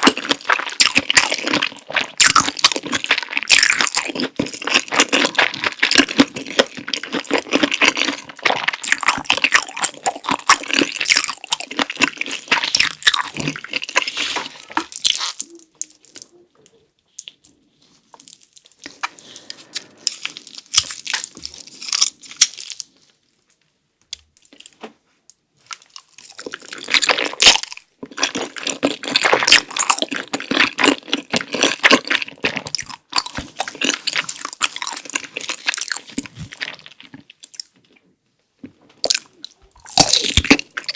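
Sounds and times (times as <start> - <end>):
crisp crunches and bites: 0.0 - 15.5, 20.1 - 23.0, 25.7 - 37.7, 39.0 - 40.9
wet chewing: 0.0 - 22.9, 25.7 - 38.0, 39.0 - 40.9.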